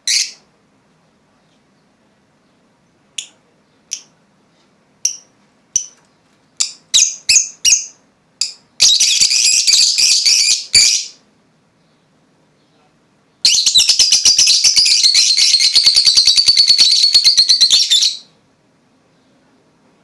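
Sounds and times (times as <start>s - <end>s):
lovebirds chirping: 0.0s - 0.4s, 1.4s - 11.2s, 11.8s - 18.2s
shrill bird chattering: 0.1s - 0.4s, 6.6s - 11.2s, 13.5s - 18.2s.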